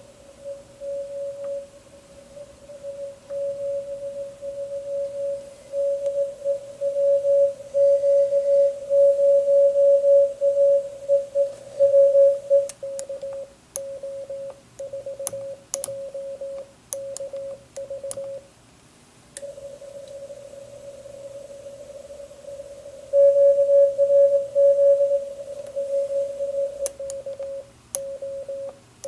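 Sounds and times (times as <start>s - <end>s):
morse code tone: 0.0s - 18.4s, 23.1s - 28.8s
sharp clicks: 14.8s - 16.0s, 16.6s - 18.3s.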